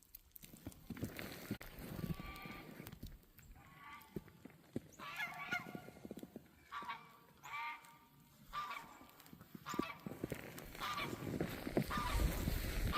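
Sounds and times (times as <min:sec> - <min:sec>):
goose honking: 0:06.6 - 0:09.0, 0:10.8 - 0:11.2, 0:11.8 - 0:12.3.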